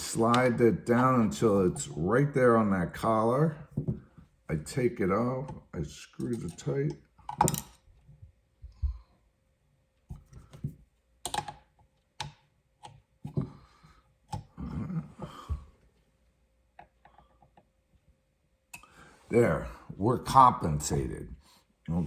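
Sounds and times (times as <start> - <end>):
metal parts clicking and knocking: 7.3 - 7.8.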